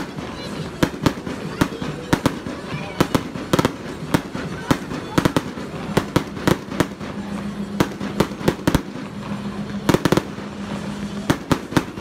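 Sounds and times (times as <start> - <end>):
sharp bangs: 0.0 - 12.0
low hum: 3.7 - 12.0.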